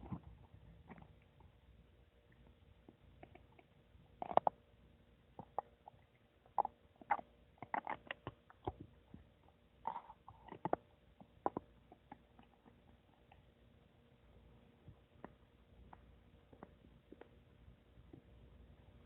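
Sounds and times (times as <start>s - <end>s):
stomach gurgling: 0.0s - 1.5s, 2.9s - 4.6s, 5.4s - 13.5s.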